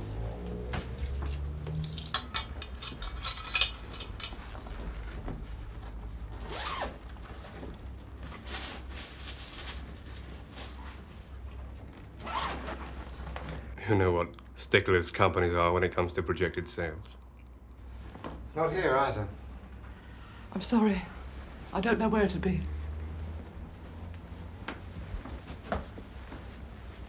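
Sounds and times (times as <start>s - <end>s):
rummaging in suitcase contents: 0.0s - 13.8s
suitcase zip pulled open: 6.4s - 7.0s, 12.2s - 13.0s.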